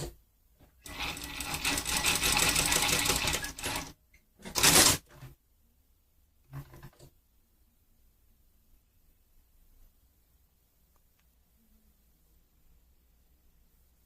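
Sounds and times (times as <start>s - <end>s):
sewing machine stitching: 0.8s - 5.3s.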